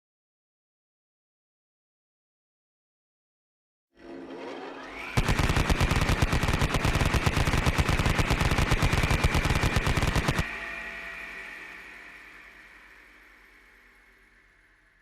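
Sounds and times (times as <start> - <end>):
electronic whine: 4.0 - 15.0
rapid automatic gunfire: 5.2 - 10.5.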